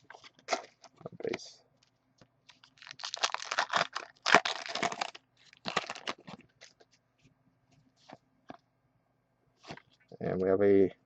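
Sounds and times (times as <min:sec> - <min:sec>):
foil wrapper tearing and crinkling: 0:02.5 - 0:06.8.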